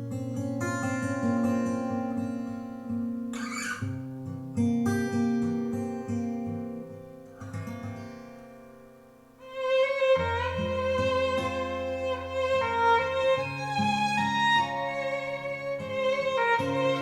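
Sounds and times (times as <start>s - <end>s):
plucked acoustic guitar: 0.0s - 17.0s
bowed strings: 9.4s - 17.0s.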